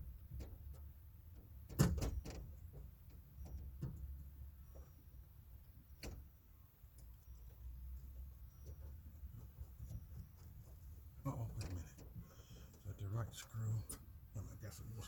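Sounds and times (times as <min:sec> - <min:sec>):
clicks and metal knocks: 0:00.0 - 0:05.0.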